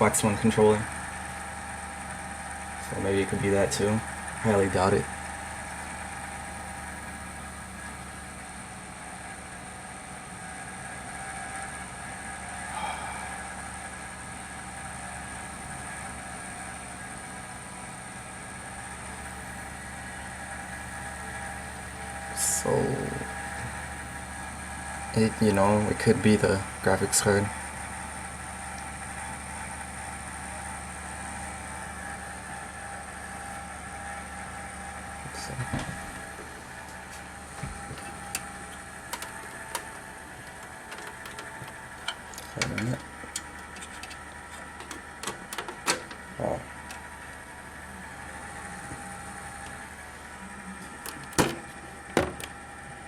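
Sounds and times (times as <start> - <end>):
computer low hum: 0.0 - 53.0
faint high whine: 11.0 - 17.4.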